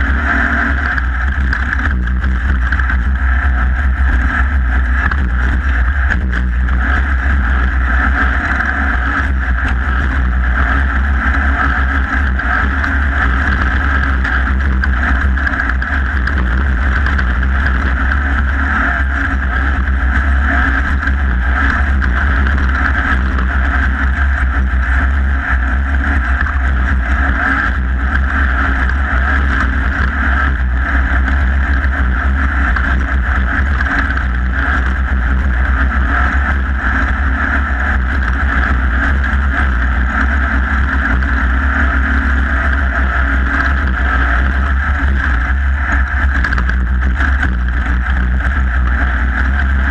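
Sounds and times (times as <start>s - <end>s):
loud engine drone: 0.0s - 49.9s
wind and terrain rumble: 0.0s - 49.9s.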